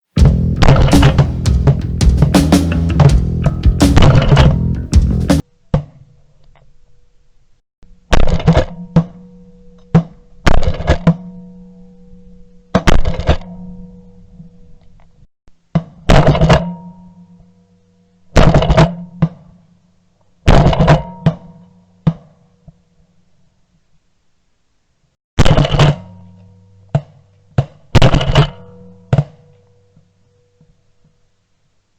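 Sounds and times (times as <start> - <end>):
booming drum hits: 0.2 - 5.4
held low tones: 0.2 - 5.4.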